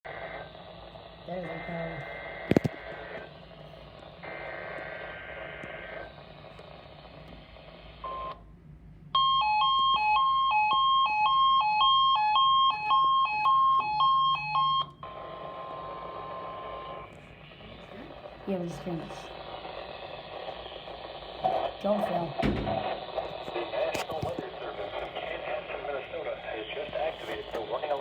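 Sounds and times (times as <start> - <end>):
radio hiss: 0.1 - 8.1, 15.0 - 28.0
two-pitch electronic alarm: 9.2 - 17.1.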